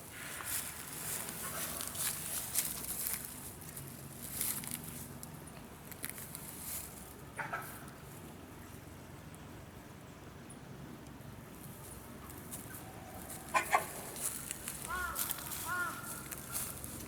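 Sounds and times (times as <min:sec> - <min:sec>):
animal footsteps rustling and crunching: 0:00.2 - 0:07.2, 0:11.6 - 0:17.0.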